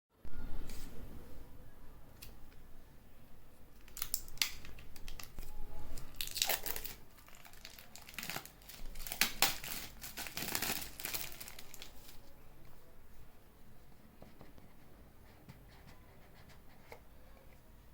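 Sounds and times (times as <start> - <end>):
packaging crinkling and tearing: 3.8 - 12.3.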